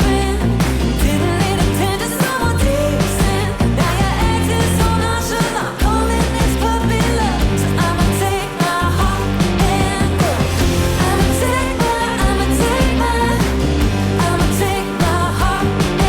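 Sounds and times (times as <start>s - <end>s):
pop song with vocals: 0.0s - 16.0s.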